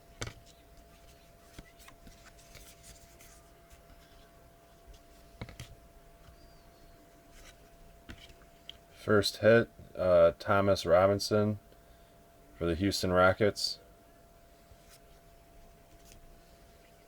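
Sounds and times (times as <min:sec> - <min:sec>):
cards and wrappers rustling: 0:00.2 - 0:05.8.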